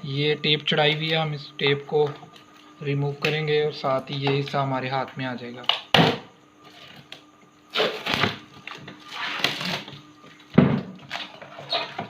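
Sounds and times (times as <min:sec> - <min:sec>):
tape pulled off plastic: 0:06.7 - 0:10.0.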